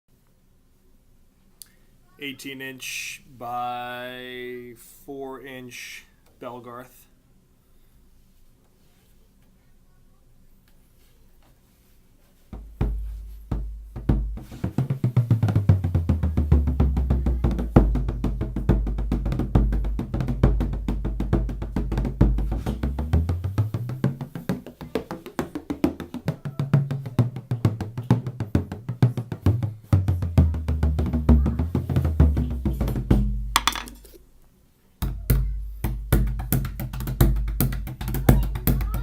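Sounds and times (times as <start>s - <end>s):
frame drum strokes: 12.4s - 34.2s.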